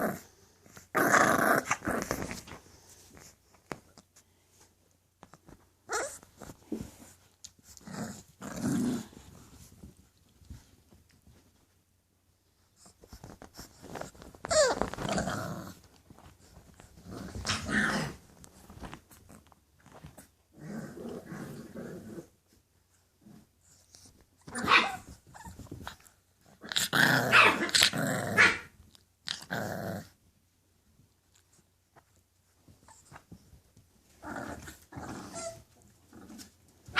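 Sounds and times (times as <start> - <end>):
puppies growling: 0.0 - 3.3, 5.8 - 9.8, 13.6 - 19.4, 20.2 - 30.3, 34.0 - 36.9.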